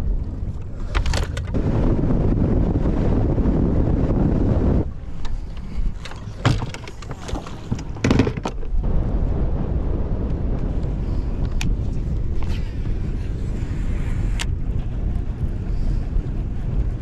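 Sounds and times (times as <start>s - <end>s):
boat motor and wind rumble: 0.0s - 17.0s
sharp knocks and clatters: 6.0s - 8.8s.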